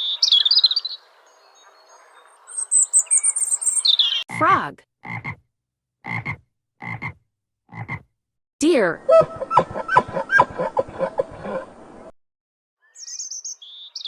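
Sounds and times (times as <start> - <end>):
frog croaking: 5.0 - 5.4, 6.0 - 8.0.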